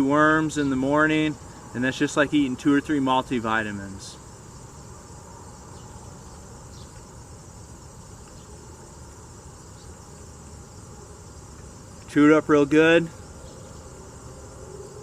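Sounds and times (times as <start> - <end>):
insects trilling: 0.0 - 15.0.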